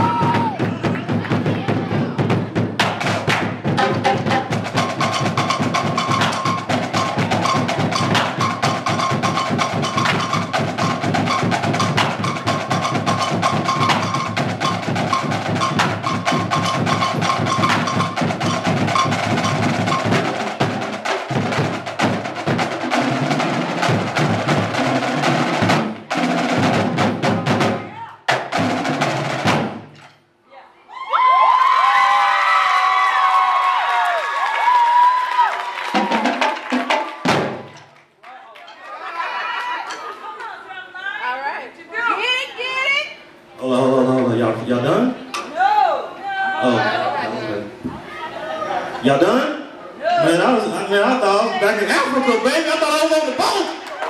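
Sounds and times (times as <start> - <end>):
bass drums: 0.0 - 30.0
snare drums playing cadence: 3.2 - 27.7.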